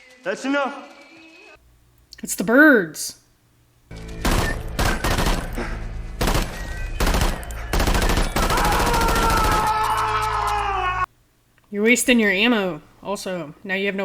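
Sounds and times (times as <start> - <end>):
gunshots: 4.1 - 9.9.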